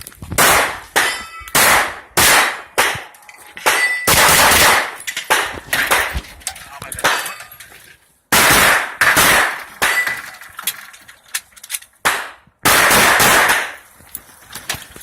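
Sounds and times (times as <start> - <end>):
pistol shots: 0.4 - 6.1, 8.3 - 10.2, 12.0 - 13.8.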